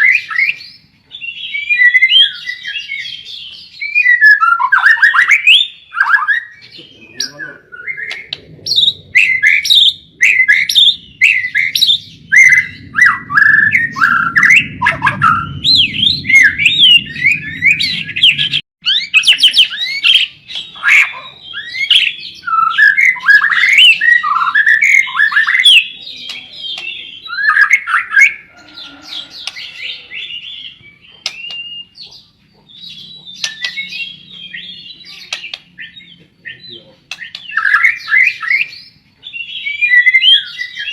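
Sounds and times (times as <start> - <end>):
bird singing whistled phrases: 0.0 - 32.0, 32.8 - 40.9
low hum: 8.2 - 18.6.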